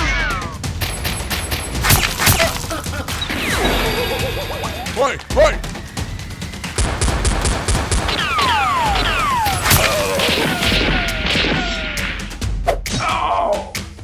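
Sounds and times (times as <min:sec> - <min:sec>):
action film music: 0:00.0 - 0:14.0
crashing hits: 0:00.1 - 0:12.4.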